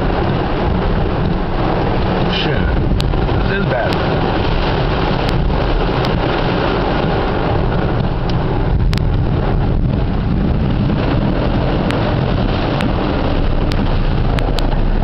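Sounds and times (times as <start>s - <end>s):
heavy rain drumming on car roof: 0.0s - 15.0s.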